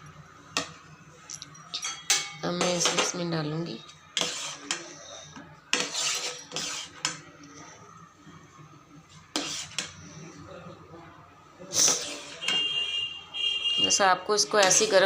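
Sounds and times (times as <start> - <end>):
metal utensils scraping a pan: 1.6 - 7.8, 9.3 - 10.4, 11.7 - 13.0, 14.4 - 15.0.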